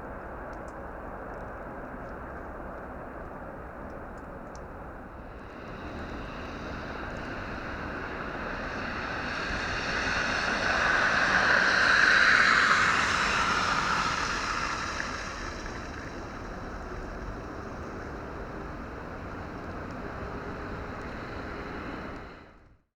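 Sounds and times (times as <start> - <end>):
vehicle tyres hissing on slush: 4.8 - 22.7.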